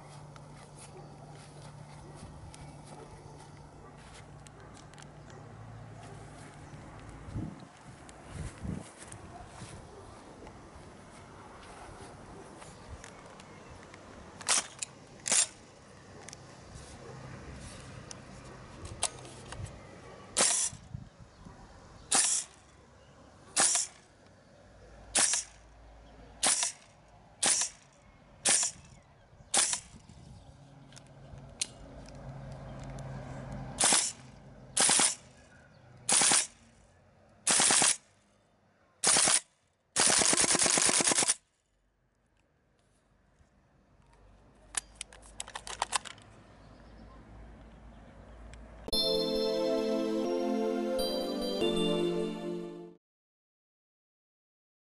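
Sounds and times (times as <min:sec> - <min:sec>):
airsoft rifle shots: 0:22.1 - 0:22.5, 0:23.6 - 0:24.0, 0:25.2 - 0:25.5, 0:26.4 - 0:26.8, 0:27.4 - 0:27.8, 0:34.8 - 0:35.2, 0:36.1 - 0:36.6, 0:37.5 - 0:38.0, 0:39.0 - 0:39.4, 0:40.0 - 0:41.4
rapid full-auto burst: 0:40.0 - 0:41.4.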